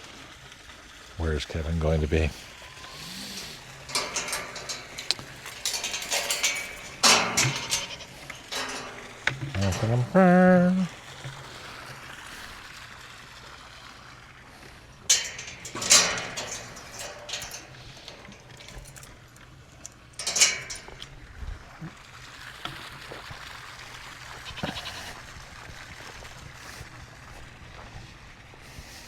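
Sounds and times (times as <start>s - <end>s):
goats and sheep bleating: 6.6s - 10.9s, 24.3s - 25.3s.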